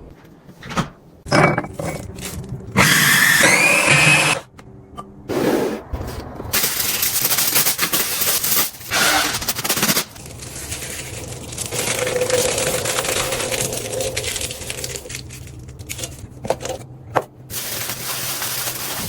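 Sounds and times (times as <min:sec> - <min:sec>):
packaging scraping and rustling: 0:06.5 - 0:16.8, 0:17.5 - 0:19.0.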